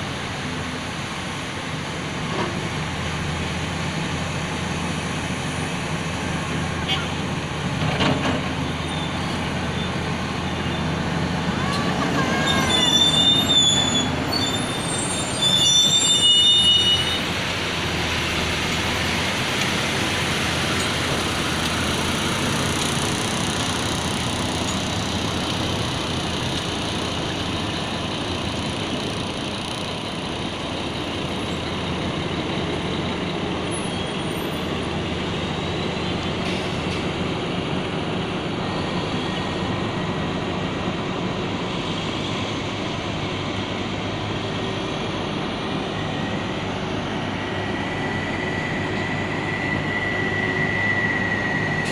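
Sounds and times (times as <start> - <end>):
diesel earthmoving machinery running: 0.0 - 51.9
high-pitched metallic squeals: 11.6 - 17.4, 47.9 - 51.9.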